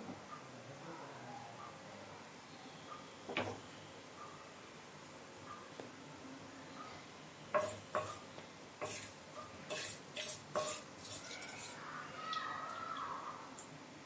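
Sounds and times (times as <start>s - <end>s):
metal spoon clinking against pan: 7.5s - 8.2s, 9.7s - 11.8s.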